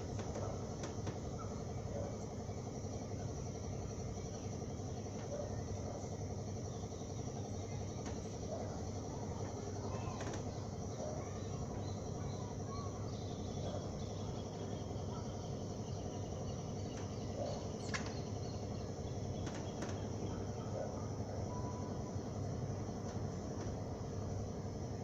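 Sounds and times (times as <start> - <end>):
faint high insect hum: 0.0 - 25.0.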